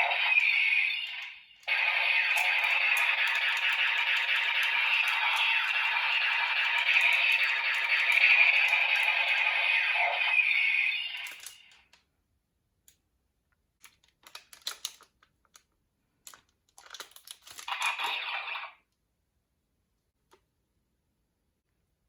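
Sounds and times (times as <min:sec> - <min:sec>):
paper crinkling and clicking: 0:01.1 - 0:09.5, 0:11.2 - 0:12.0, 0:13.8 - 0:18.5.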